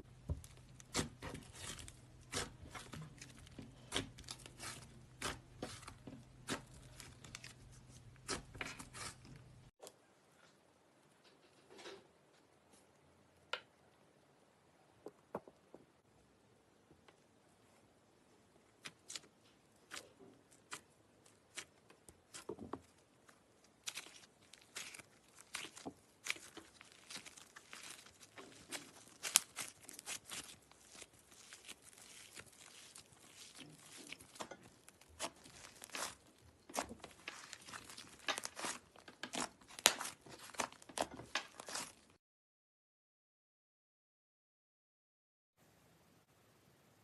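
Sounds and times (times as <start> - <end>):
slime squeezed with wet crackles: 23.7 - 42.0.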